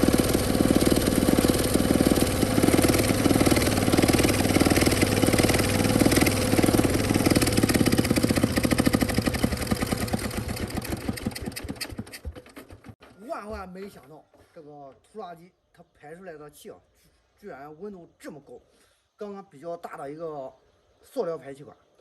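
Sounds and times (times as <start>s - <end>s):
diesel tractor engine running: 0.0s - 13.0s
engine shutting off: 0.0s - 13.0s.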